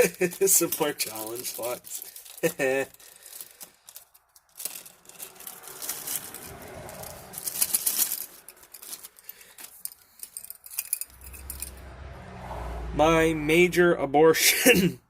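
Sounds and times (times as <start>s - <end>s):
packing wrapping crinkling: 0.0s - 11.0s.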